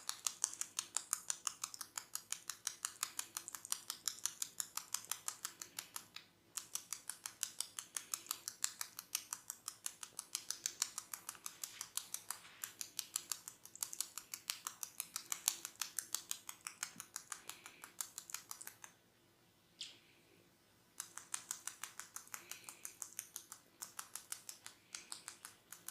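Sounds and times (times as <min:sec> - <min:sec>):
hair crackling between fingers: 0:00.0 - 0:19.0, 0:21.0 - 0:25.9.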